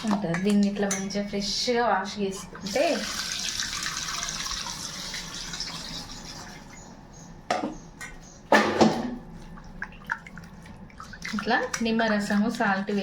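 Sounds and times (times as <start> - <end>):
water splashing in a bowl: 0.0 - 1.1, 2.3 - 6.7, 8.6 - 13.0.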